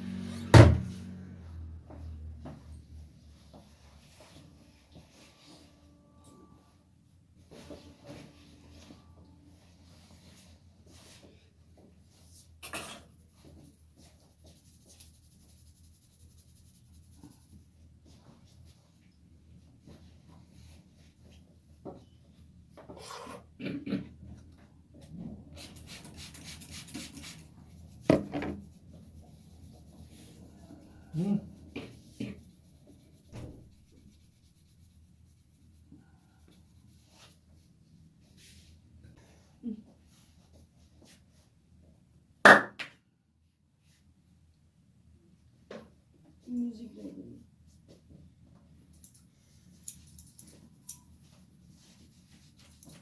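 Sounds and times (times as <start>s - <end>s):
hands rubbing hair and scalp: 13.1s - 18.5s, 25.6s - 37.7s, 49.5s - 53.0s.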